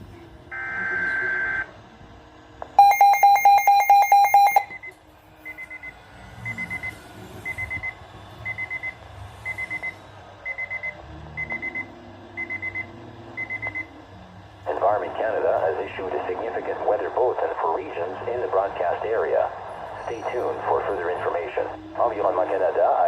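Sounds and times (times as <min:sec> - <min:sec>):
weather radio alarm beeping: 0:00.5 - 0:01.7, 0:02.8 - 0:05.9.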